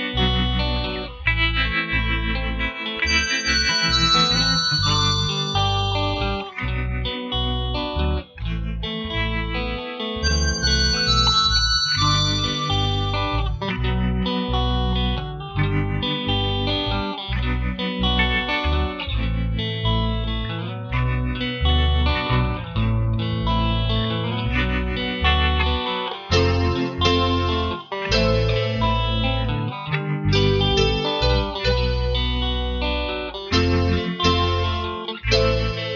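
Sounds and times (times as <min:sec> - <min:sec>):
electric guitar music with beat: 0:00.0 - 0:35.9.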